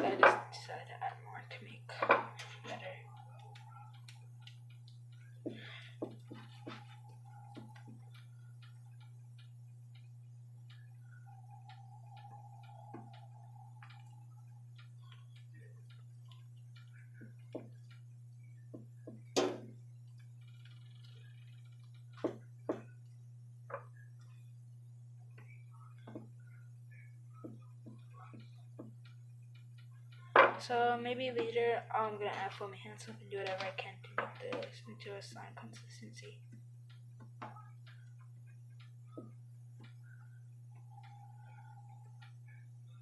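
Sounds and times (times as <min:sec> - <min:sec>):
low electrical hum: 0:00.0 - 0:43.0
dough being mixed by hand: 0:02.4 - 0:09.5.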